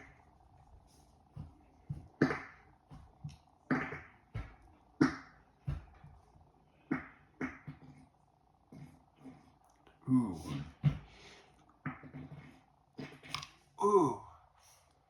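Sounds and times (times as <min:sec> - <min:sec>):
fart noises: 0:03.7 - 0:04.3.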